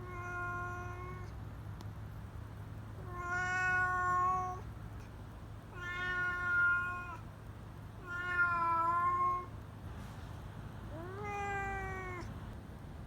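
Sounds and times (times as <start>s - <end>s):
cat yowling: 0.0s - 1.3s, 3.0s - 4.6s, 5.8s - 7.2s, 8.0s - 9.5s, 10.9s - 12.3s.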